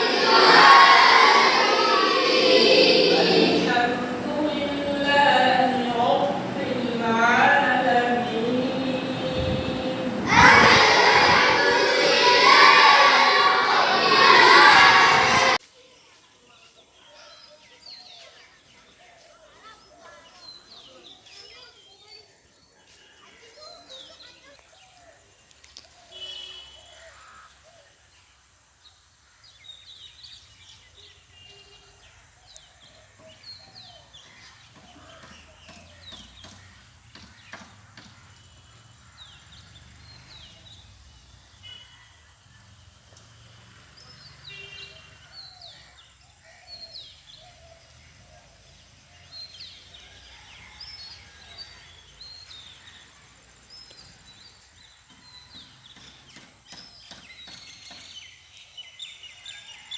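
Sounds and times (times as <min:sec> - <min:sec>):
small birds chirping: 0:44.0 - 0:59.9.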